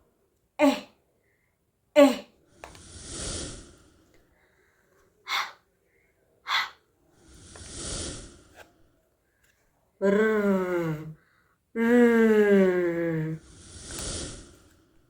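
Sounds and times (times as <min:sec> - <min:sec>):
short sharp breath puffs: 0:02.6 - 0:05.6, 0:06.5 - 0:08.8, 0:13.5 - 0:14.8
person breathy exhalations: 0:03.0 - 0:05.6, 0:06.5 - 0:08.6.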